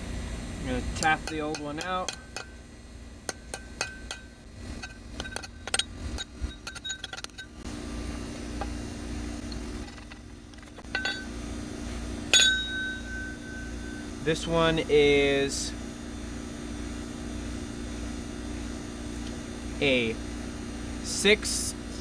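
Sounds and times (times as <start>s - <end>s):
steady hum: 0.0s - 22.0s
hammer tapping on metal: 1.0s - 2.6s, 3.3s - 7.6s, 9.9s - 11.3s, 12.3s - 14.0s.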